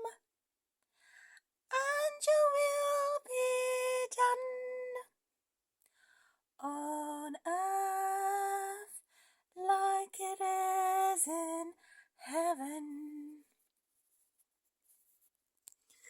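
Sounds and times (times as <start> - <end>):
woman singing a hymn: 1.7 - 5.0, 6.6 - 9.0, 9.6 - 13.4.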